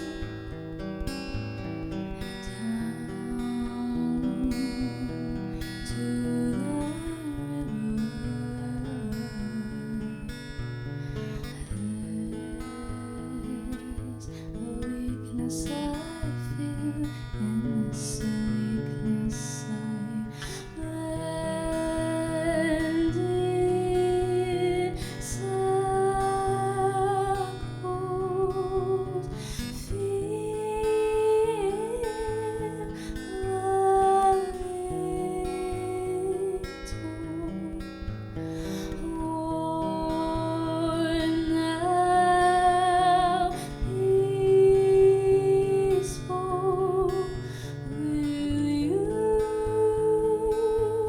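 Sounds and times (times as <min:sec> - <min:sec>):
acoustic guitar strummed and picked: 0:00.0 - 0:51.0
person singing with vibrato: 0:11.5 - 0:51.0.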